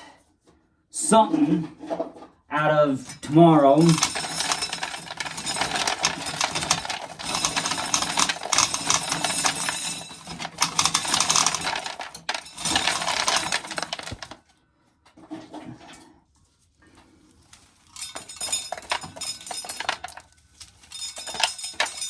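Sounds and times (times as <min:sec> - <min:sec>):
corn kernels rattling into container: 0:03.8 - 0:14.4, 0:18.0 - 0:22.0.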